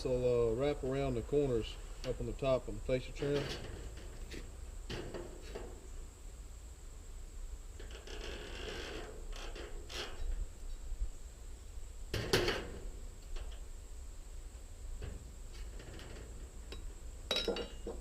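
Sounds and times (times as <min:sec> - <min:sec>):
metal trim scraping and rustling: 0:02.0 - 0:05.9, 0:07.8 - 0:10.5.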